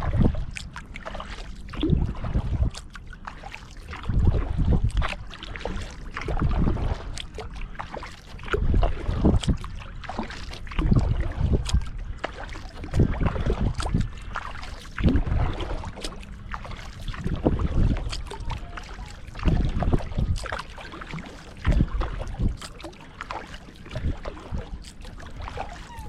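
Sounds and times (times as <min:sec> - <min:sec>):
kayak paddle splashing: 0:00.0 - 0:26.0.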